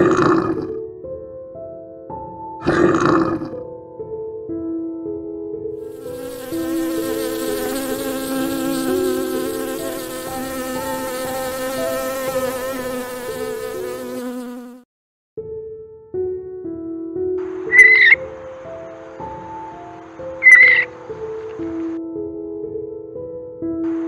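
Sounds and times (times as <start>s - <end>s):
background music: 0.0s - 14.4s, 15.4s - 24.0s
steady buzz: 5.9s - 14.8s.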